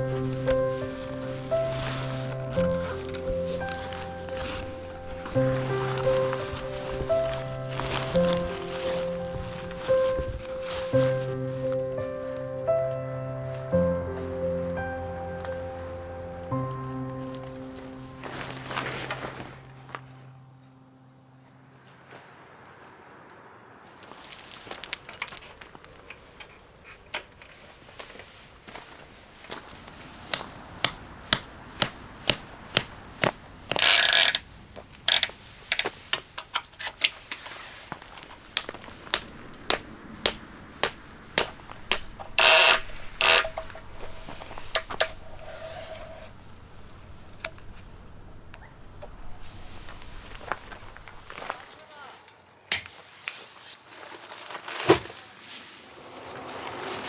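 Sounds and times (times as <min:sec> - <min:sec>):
rasping bursts: 0:30.3 - 0:34.5, 0:38.4 - 0:46.4
sharp mechanical clicks: 0:30.3 - 0:36.2, 0:38.6 - 0:43.7.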